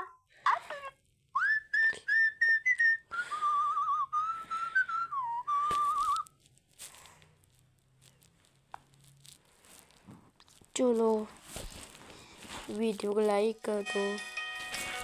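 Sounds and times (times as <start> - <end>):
person whistling a tune: 1.4 - 6.3.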